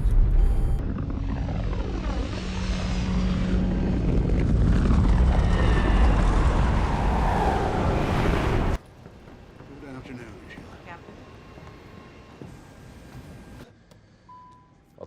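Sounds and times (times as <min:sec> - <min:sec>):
airliner passing low: 0:01.5 - 0:08.8.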